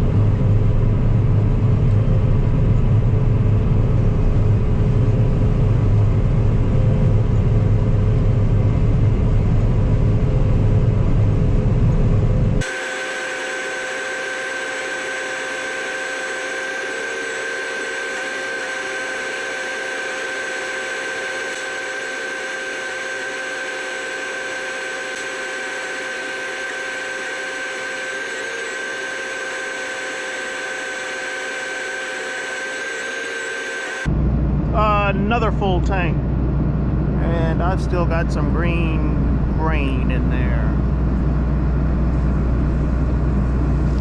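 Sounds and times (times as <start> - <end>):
combine harvester running: 12.6 - 44.0.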